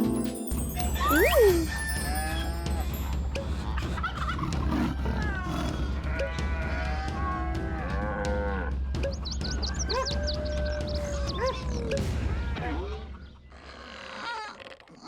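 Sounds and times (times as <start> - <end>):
quick high chirps: 0.0 - 3.5.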